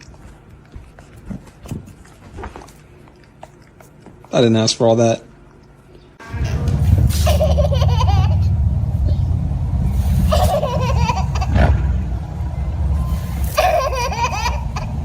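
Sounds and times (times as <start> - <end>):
car rumbling in motion: 6.2 - 15.0.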